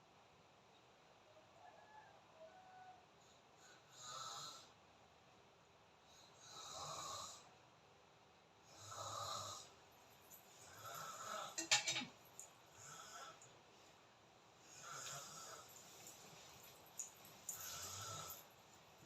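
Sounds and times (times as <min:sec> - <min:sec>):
person snoring: 0:08.7 - 0:09.7, 0:10.6 - 0:11.6, 0:12.8 - 0:13.4, 0:14.7 - 0:15.8, 0:17.5 - 0:18.4.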